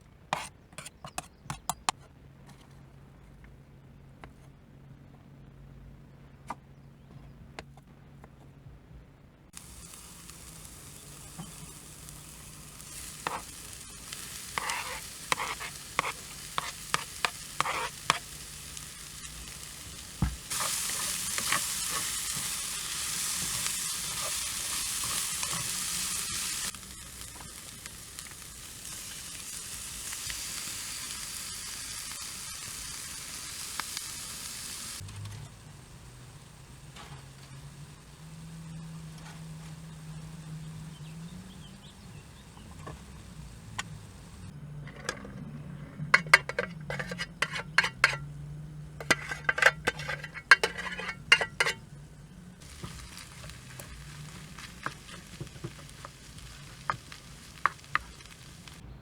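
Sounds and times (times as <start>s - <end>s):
food sizzling in a pan: 9.6s - 44.5s, 46.1s - 51.8s, 52.6s - 58.8s
utensil scraping a pan: 11.4s - 26.8s, 44.8s - 51.9s, 52.6s - 58.8s.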